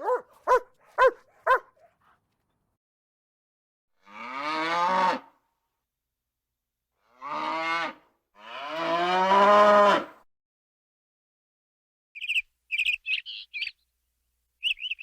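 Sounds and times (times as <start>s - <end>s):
cow mooing: 4.0s - 5.3s, 7.1s - 10.2s.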